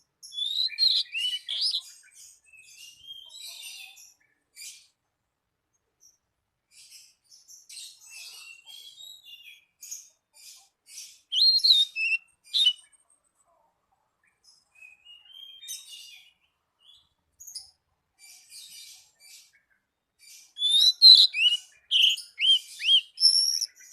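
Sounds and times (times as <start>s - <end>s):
songbirds chirping and trilling: 0.0s - 23.9s
loud whistled bird notes: 0.3s - 1.8s, 11.3s - 12.8s, 20.6s - 23.9s.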